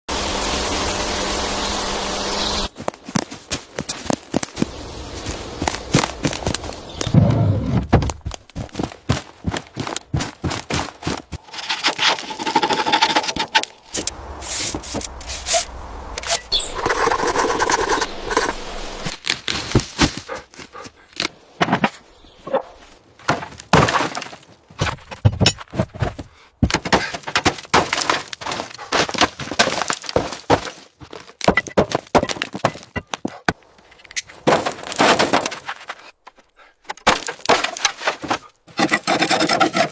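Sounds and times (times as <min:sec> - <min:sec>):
steady rushing noise: 0:00.1 - 0:19.2
sharp knocks and crashes: 0:22.6 - 0:33.6, 0:34.2 - 0:36.0.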